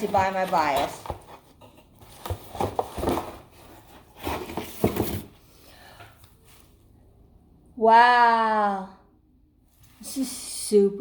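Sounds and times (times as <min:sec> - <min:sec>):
packaging rustling: 0:00.0 - 0:05.4.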